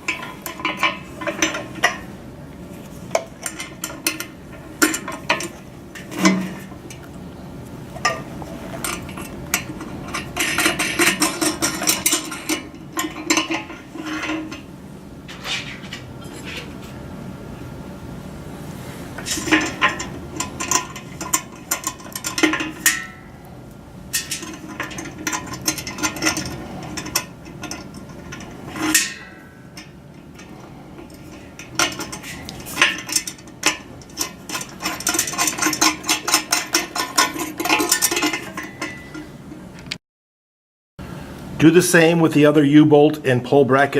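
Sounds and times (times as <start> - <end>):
metal hardware clinking: 0.0 - 2.2, 2.9 - 7.1, 8.0 - 14.7, 19.2 - 23.3, 24.1 - 40.0
rattling metal clicks: 0.0 - 2.2, 2.8 - 7.2, 8.0 - 14.7, 19.2 - 23.3, 24.1 - 40.0.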